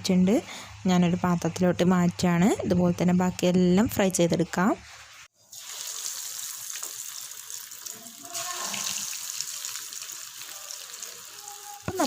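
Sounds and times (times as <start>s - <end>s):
food frying in oil: 4.8s - 12.0s.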